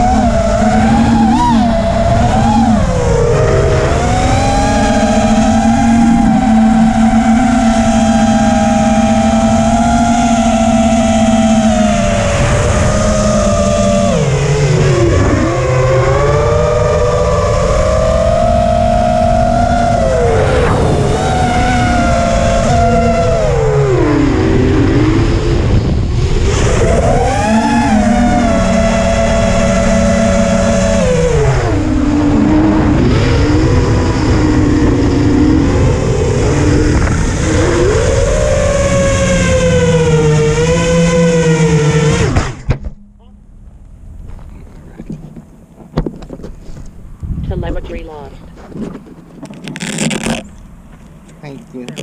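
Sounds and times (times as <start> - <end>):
quadcopter motors whining: 0.0 - 42.7.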